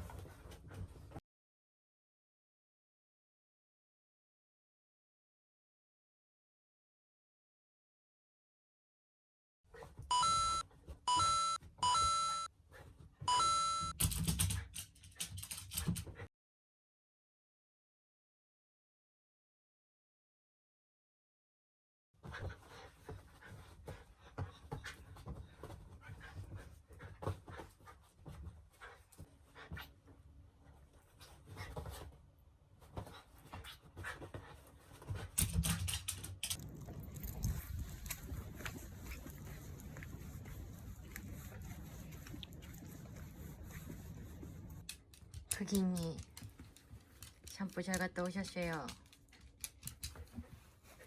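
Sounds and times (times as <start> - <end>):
scratchy rustling: 36.4 - 44.8
dog panting: 36.8 - 44.8.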